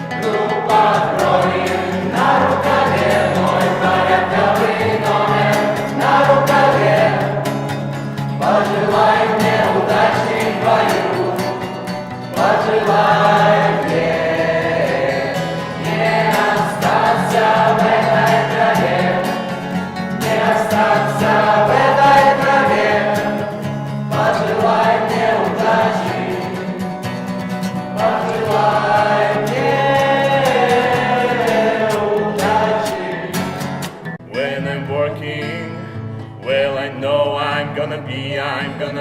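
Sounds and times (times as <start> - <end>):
instrumental accompaniment: 0.0 - 34.4
group of people singing: 0.0 - 35.8, 36.4 - 39.0.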